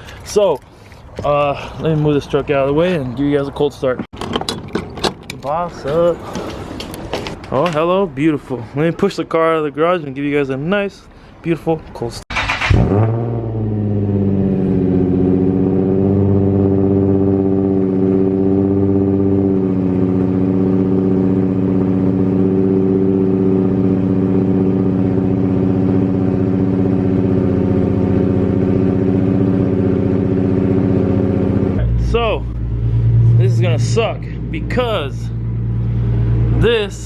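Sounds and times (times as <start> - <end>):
car engine idling: 13.3 - 37.0.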